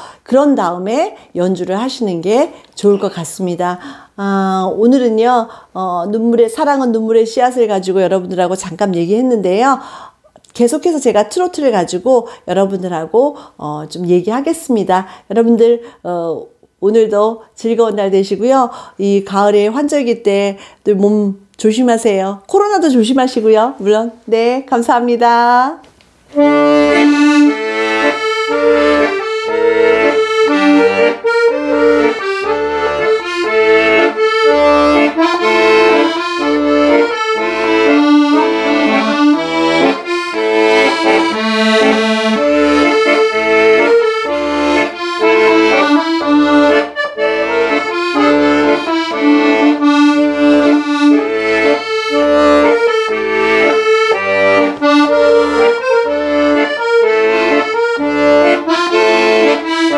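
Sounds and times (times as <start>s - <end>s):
accordion melody: 0.0s - 8.2s, 26.3s - 59.9s.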